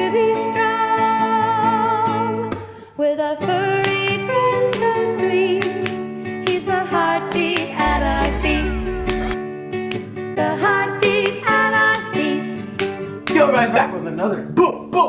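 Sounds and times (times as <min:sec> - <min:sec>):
person singing: 0:07.8 - 0:09.4.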